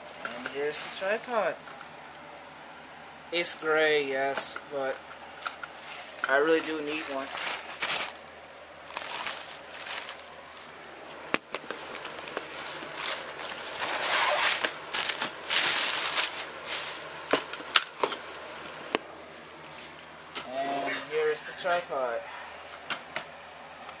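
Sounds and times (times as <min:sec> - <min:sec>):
packaging rustling and crinkling: 0:04.8 - 0:19.0.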